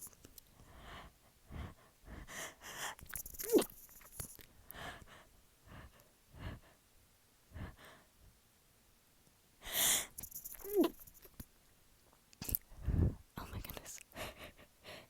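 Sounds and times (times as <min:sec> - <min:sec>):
woman hitching breaths: 0:00.0 - 0:04.0, 0:04.6 - 0:06.8, 0:07.5 - 0:08.1, 0:09.6 - 0:11.1.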